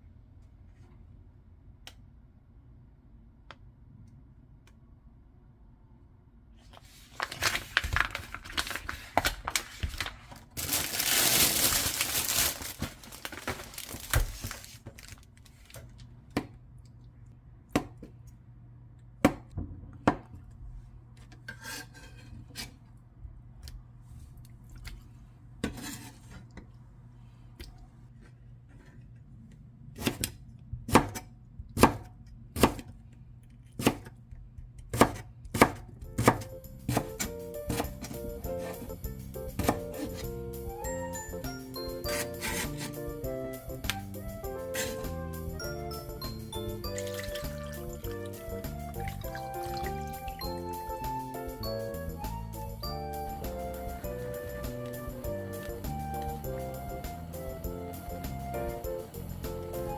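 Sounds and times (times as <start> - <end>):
packaging crinkling and tearing: 6.8 - 16.1.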